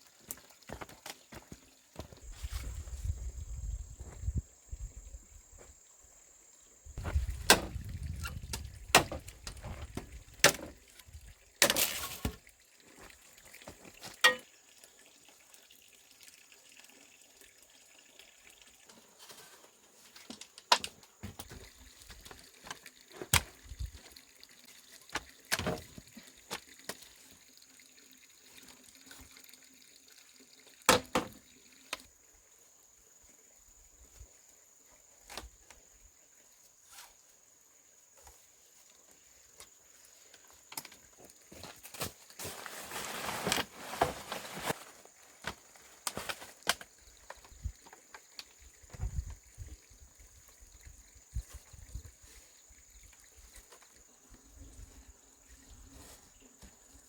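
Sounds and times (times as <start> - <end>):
water splashing and dripping: 0.0 - 3.3, 7.0 - 32.1, 44.6 - 54.9.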